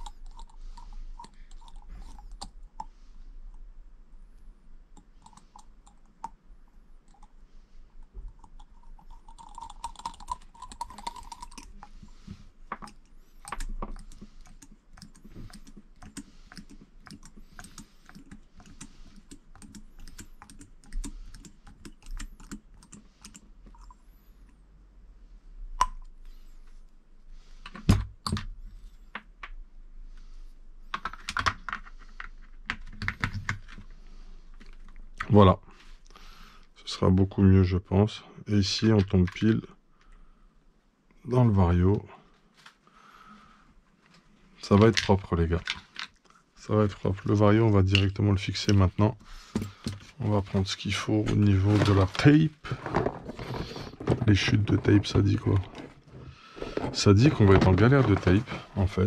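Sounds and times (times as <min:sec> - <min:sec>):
small plastic parts clicking: 0:00.0 - 0:02.9, 0:08.0 - 0:12.1.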